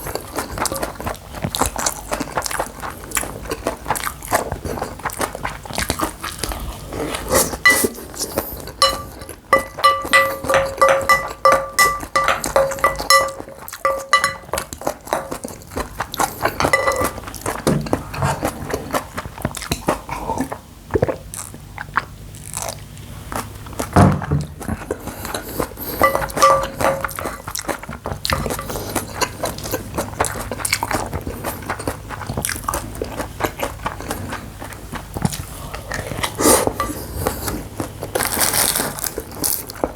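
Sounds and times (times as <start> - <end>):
chewing and crunching food: 0.0 - 39.9
spoon clicking against bowl: 8.8 - 14.5, 16.6 - 17.1
steady ringing tone: 8.8 - 14.6, 16.7 - 17.1, 26.0 - 27.2.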